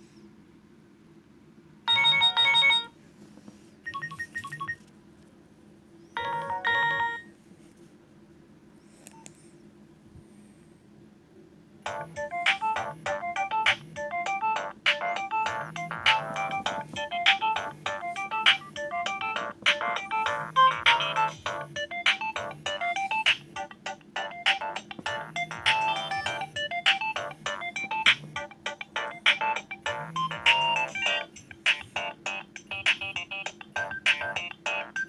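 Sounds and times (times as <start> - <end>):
fast ringtone melody: 1.9 - 2.9, 6.2 - 7.3, 11.8 - 35.0
mobile phone tone phrases: 1.9 - 2.9, 6.2 - 7.3.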